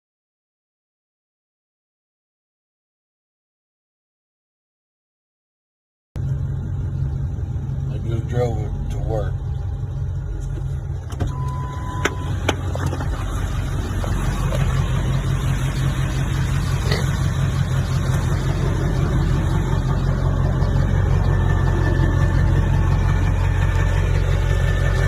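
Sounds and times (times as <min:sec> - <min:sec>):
truck engine idling: 0:06.2 - 0:25.0
short steady beep: 0:11.3 - 0:12.4.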